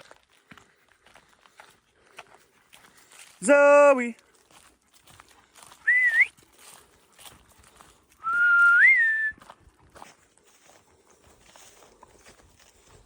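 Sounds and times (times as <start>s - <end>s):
person whistling: 5.8s - 6.3s, 8.2s - 9.4s.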